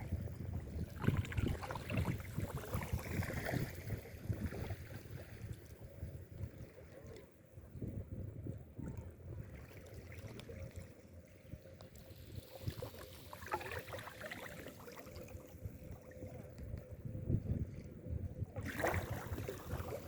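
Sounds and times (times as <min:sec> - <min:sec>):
wind gusting on microphone: 0:00.0 - 0:06.8, 0:07.6 - 0:09.6, 0:15.5 - 0:20.0.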